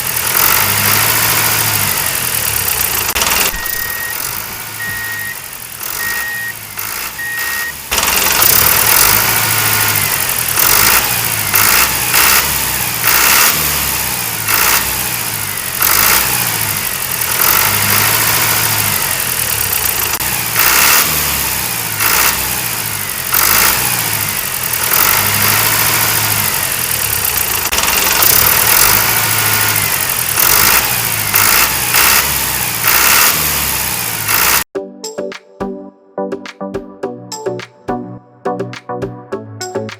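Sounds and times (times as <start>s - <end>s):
small engine running rough: 0.0s - 34.7s
short beeping: 3.1s - 8.6s.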